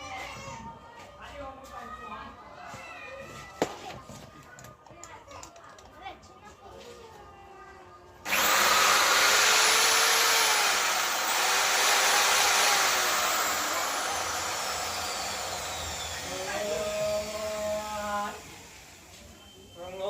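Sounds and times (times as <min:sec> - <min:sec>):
electric drill whirring: 0:08.3 - 0:19.4.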